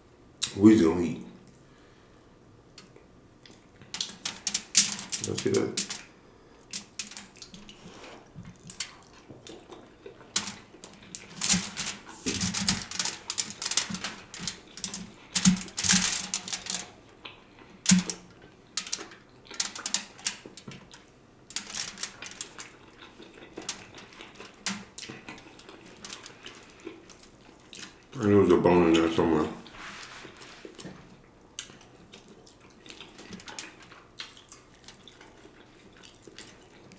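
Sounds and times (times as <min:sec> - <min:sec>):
person chewing meat: 0:05.6 - 0:11.4, 0:22.1 - 0:28.2, 0:30.2 - 0:36.9.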